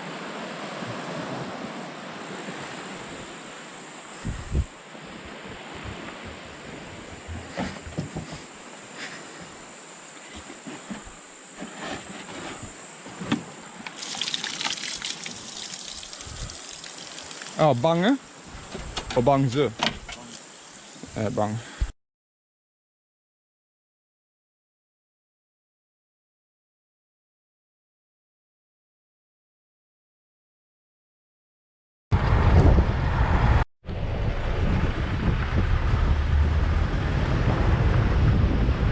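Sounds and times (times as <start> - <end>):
water trickling and lapping: 0.3 - 21.8
wind buffeting microphone: 4.2 - 7.6, 16.0 - 16.8, 32.2 - 38.9
hissing splash of water: 13.9 - 18.8, 20.0 - 21.6.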